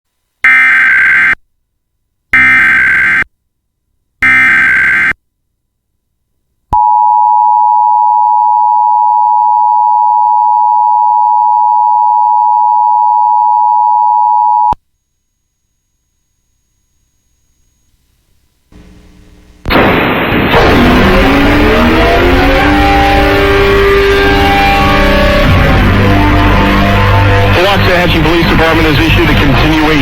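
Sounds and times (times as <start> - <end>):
digital data tone bursts: 4.2 - 5.2.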